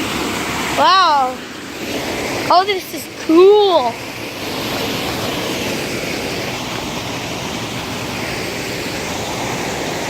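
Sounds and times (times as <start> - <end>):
small waterfall rushing: 0.0 - 10.0.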